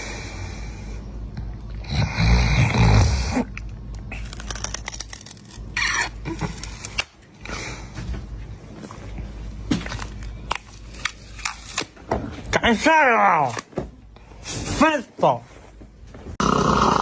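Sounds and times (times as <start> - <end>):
loud snore: 1.8 - 3.5, 16.4 - 17.0.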